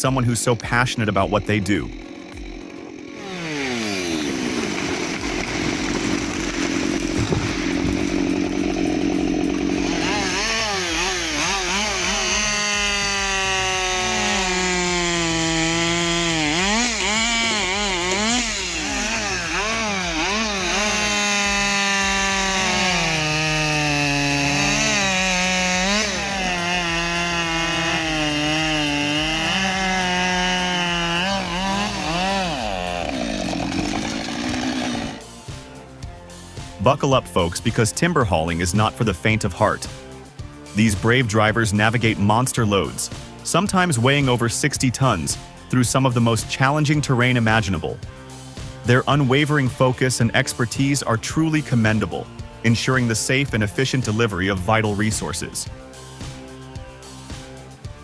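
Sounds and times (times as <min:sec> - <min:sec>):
chainsaw cutting wood: 0:00.0 - 0:35.7.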